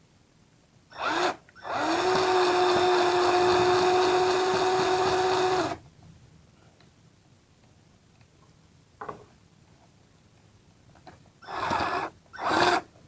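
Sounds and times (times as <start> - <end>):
electric drill whine: 1.0 - 5.8, 11.4 - 12.8.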